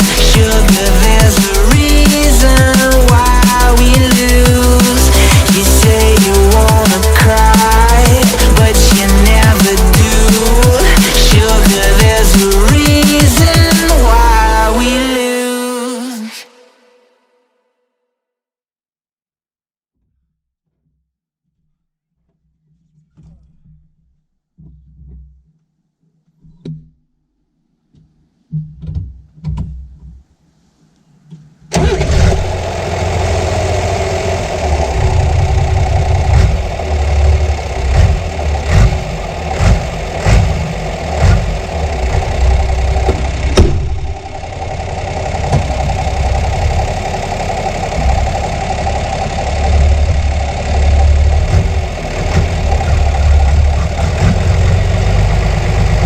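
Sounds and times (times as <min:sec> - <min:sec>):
tractor diesel engine running: 0:00.0 - 0:15.3, 0:31.7 - 0:56.0.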